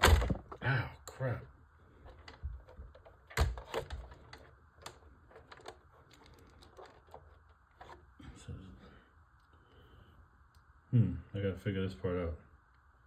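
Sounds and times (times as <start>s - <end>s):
plastic parts clicking and tapping: 2.1s - 8.0s.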